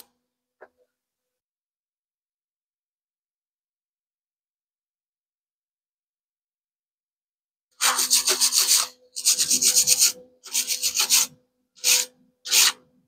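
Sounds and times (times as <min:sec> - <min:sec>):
hand tool rasping on metal: 0:07.8 - 0:12.8.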